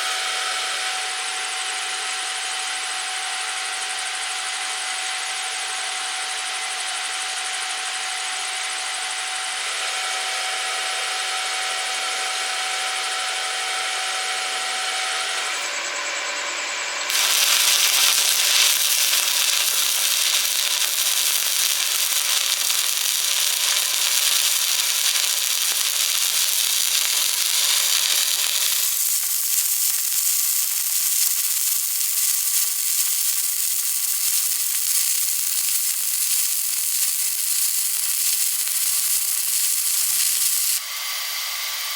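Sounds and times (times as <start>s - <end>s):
welding arc crackling: 17.1s - 41.0s.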